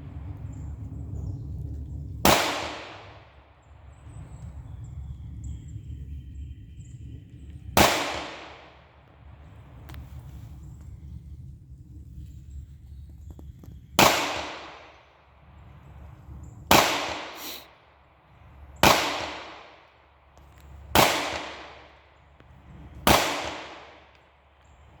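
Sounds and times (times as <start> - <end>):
pistol shots with echo: 2.2 - 3.6, 7.8 - 8.9, 14.0 - 15.0, 16.7 - 17.6, 18.8 - 19.9, 20.9 - 22.1, 23.0 - 24.4.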